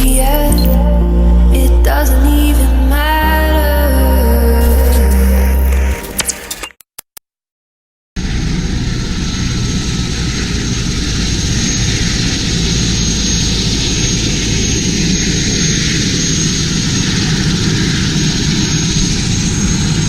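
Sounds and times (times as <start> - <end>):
thin high whine: 1.6 - 6.7
helicopter rotor and engine: 8.3 - 20.0.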